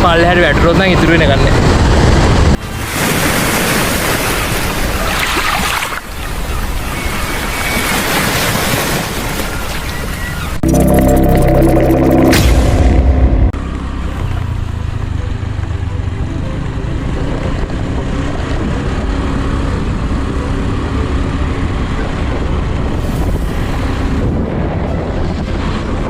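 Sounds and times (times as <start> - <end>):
wind noise on microphone: 0.0 - 10.6, 14.2 - 26.0
vehicle rumble: 10.5 - 26.0
background music: 10.6 - 13.6, 14.6 - 21.9.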